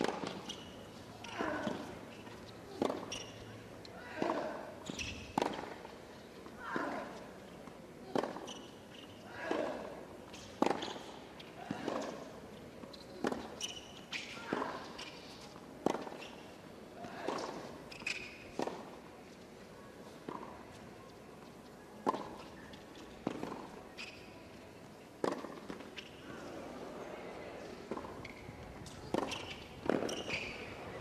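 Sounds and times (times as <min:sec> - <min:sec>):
racquet striking tennis ball: 0:02.8 - 0:03.4, 0:04.1 - 0:05.9, 0:09.4 - 0:12.2, 0:15.8 - 0:16.3, 0:25.2 - 0:25.9, 0:29.0 - 0:30.6.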